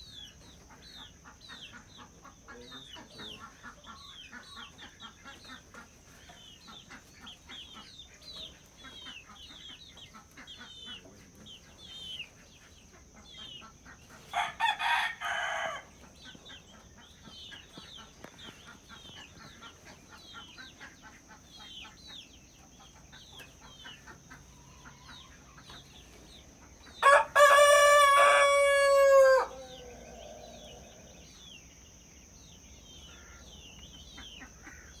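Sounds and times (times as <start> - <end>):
chickens calling: 0.0 - 35.0
faint chirping: 0.0 - 35.0
rooster crowing: 14.3 - 16.0, 27.0 - 31.3.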